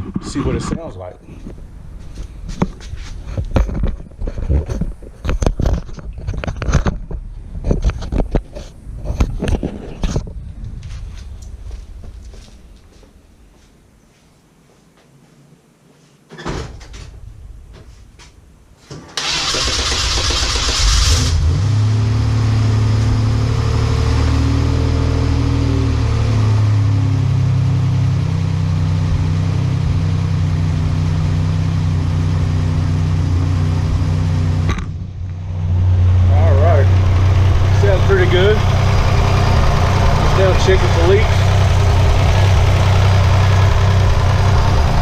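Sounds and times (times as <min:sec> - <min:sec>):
car engine cranking and idling: 0:19.2 - 0:45.0.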